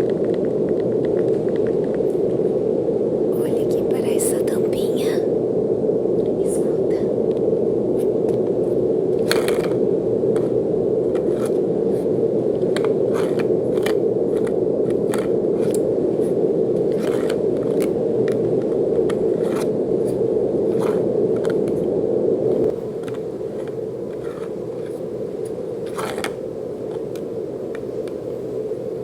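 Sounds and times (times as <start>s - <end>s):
brown noise hiss: 0.0s - 29.0s
crisp scraping and clicking: 9.2s - 9.8s, 10.4s - 21.8s, 22.6s - 28.2s.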